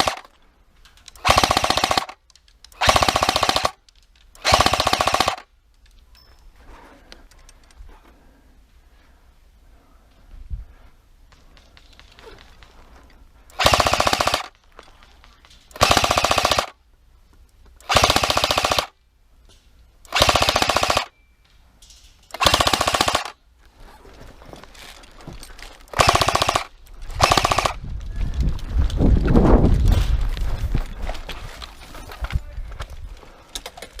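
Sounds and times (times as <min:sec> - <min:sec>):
airsoft gun firing bursts: 0:00.0 - 0:00.3, 0:01.2 - 0:02.2, 0:02.8 - 0:03.8, 0:04.4 - 0:05.5, 0:13.5 - 0:14.6, 0:15.8 - 0:16.8, 0:17.8 - 0:19.0, 0:20.1 - 0:21.1, 0:22.4 - 0:23.4, 0:25.9 - 0:27.8.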